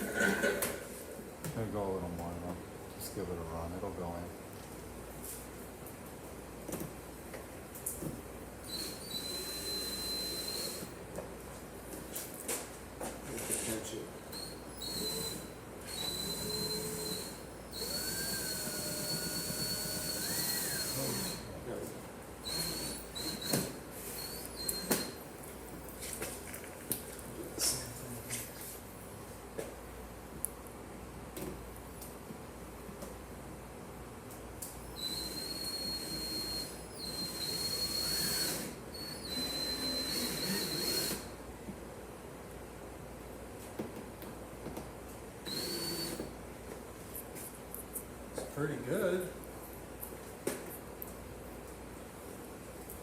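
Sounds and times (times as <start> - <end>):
small electric motor whining: 14.3 - 21.5, 22.4 - 25.2, 34.8 - 41.3, 45.5 - 46.3.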